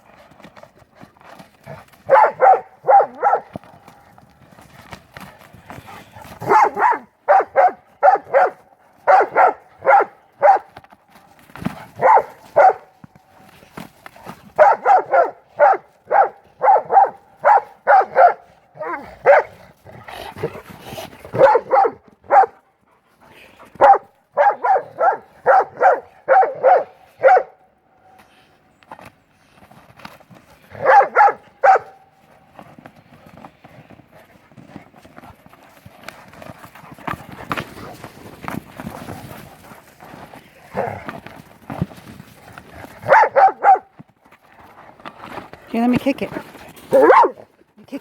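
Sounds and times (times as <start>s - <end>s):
dog barking in quick runs: 1.6s - 4.1s, 5.8s - 10.8s, 11.6s - 13.0s, 14.4s - 19.7s, 21.3s - 22.6s, 23.8s - 27.6s, 30.7s - 32.1s, 40.7s - 41.1s, 43.0s - 44.0s, 46.9s - 47.5s.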